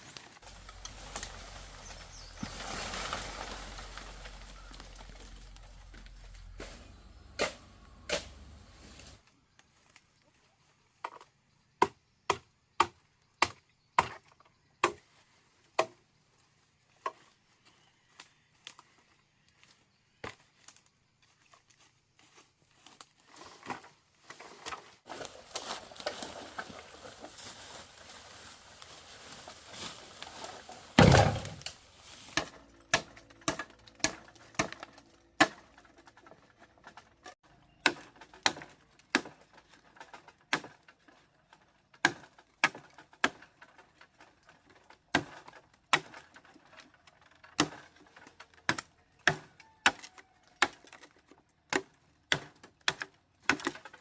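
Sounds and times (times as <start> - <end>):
rustling: 0.0 - 7.7, 21.3 - 37.4
blade chopping bamboo: 7.4 - 8.4, 11.8 - 15.0, 31.0 - 37.0, 37.7 - 41.2, 41.9 - 43.9, 44.7 - 51.1, 51.7 - 54.0.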